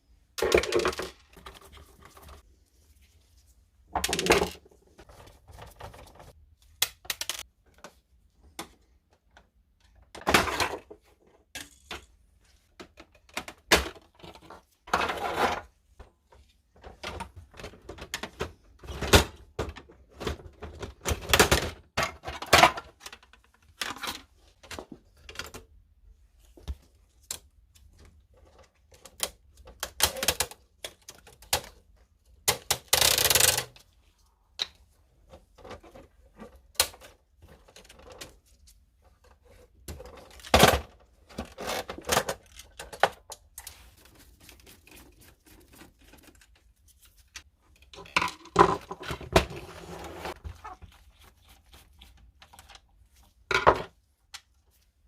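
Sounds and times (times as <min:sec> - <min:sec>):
scraping noises: 0:49.4 - 0:50.9.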